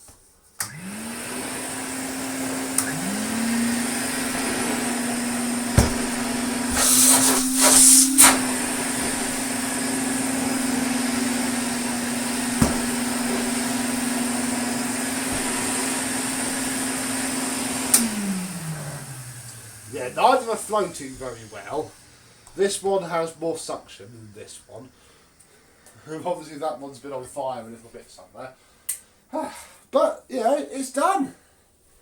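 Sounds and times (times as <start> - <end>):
vacuum cleaner motors humming: 0.6 - 24.8
loud rush of air: 2.8 - 14.6
sharp knocks: 5.7 - 6.2, 12.6 - 13.1.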